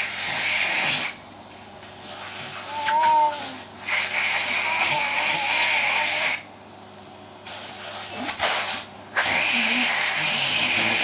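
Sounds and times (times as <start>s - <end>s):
vacuum cleaner motor whine: 9.2s - 11.0s.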